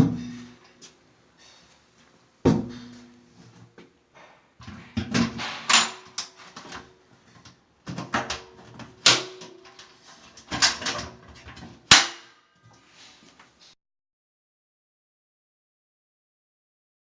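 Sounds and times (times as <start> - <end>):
hard objects knocking and clattering: 4.1 - 12.1.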